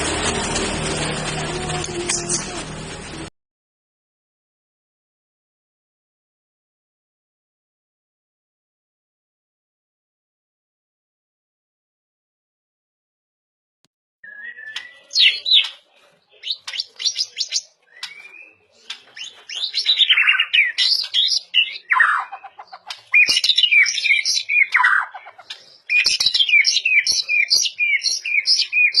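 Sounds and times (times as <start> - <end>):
bird singing whistles and trills: 14.2 - 15.8, 16.4 - 22.4, 23.1 - 29.0.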